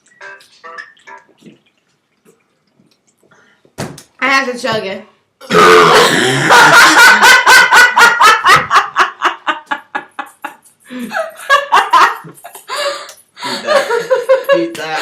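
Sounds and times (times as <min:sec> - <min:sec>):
hearty laughter: 0:06.3 - 0:12.8, 0:13.4 - 0:14.8.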